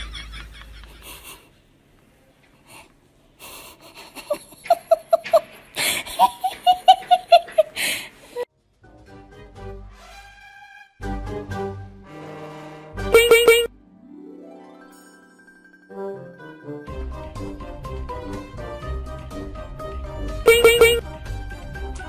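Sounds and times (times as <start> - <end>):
breathy gasps: 7.8 - 8.4
music: 8.5 - 22.0.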